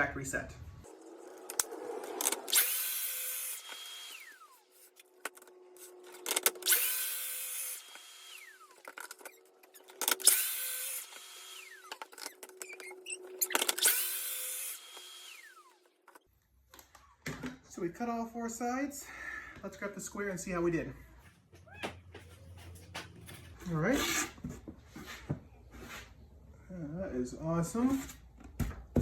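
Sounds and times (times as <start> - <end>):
track saw cutting board: 0.9 - 16.2.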